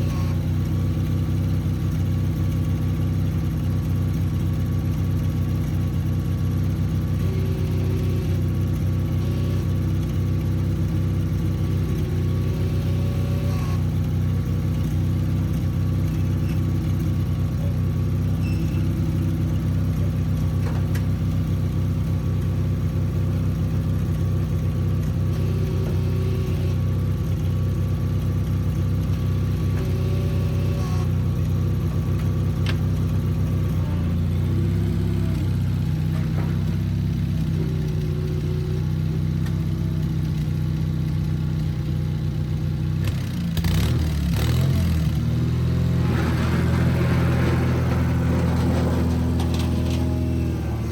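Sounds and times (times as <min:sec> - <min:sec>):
garden tractor engine running: 0:00.0 - 0:50.9.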